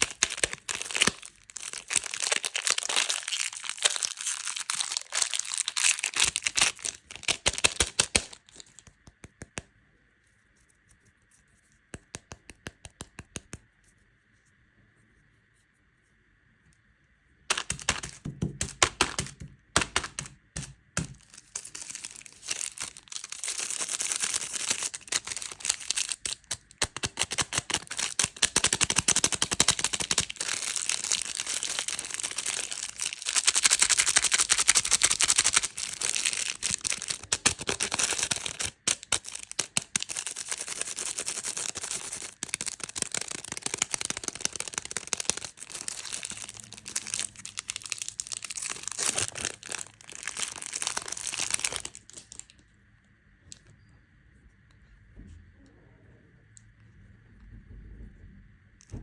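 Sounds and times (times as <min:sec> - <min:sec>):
candy wrappers crinkling: 0:00.0 - 0:09.1, 0:17.5 - 0:52.6.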